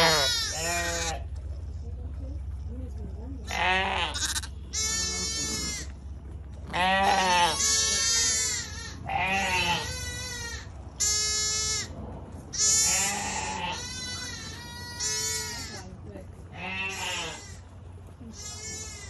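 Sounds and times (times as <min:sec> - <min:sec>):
sheep and lambs bleating: 0:00.0 - 0:01.3, 0:03.4 - 0:06.0, 0:06.6 - 0:11.9, 0:12.5 - 0:15.9, 0:16.5 - 0:19.0.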